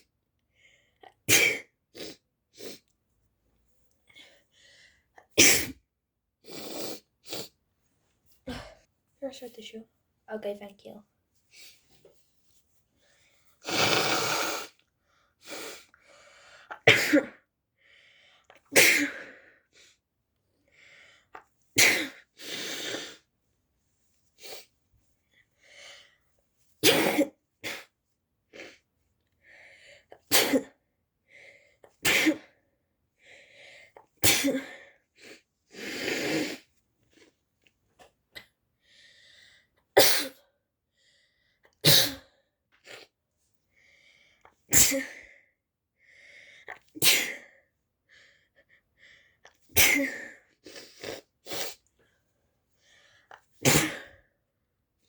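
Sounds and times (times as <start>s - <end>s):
person sneezing: 1.3s - 2.2s, 5.4s - 5.8s, 16.7s - 17.4s, 18.7s - 19.2s, 26.8s - 27.8s, 30.3s - 30.8s, 32.0s - 32.5s, 34.2s - 34.8s, 40.0s - 40.4s, 41.8s - 42.3s, 44.7s - 45.2s, 47.0s - 47.5s, 49.8s - 50.4s, 53.6s - 54.2s.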